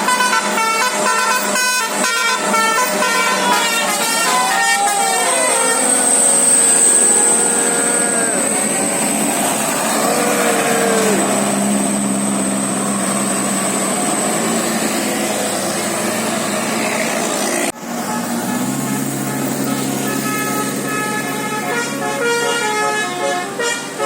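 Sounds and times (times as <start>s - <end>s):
musical bus air horn: 0.0s - 8.4s, 18.0s - 24.0s
bus and traffic noise: 0.0s - 24.0s.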